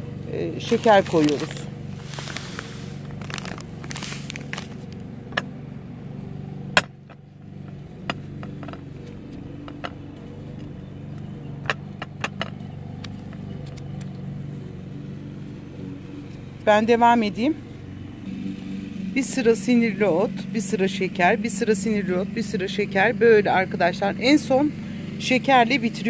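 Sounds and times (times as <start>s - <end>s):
sugar rustling into a jar: 0.6s - 5.0s.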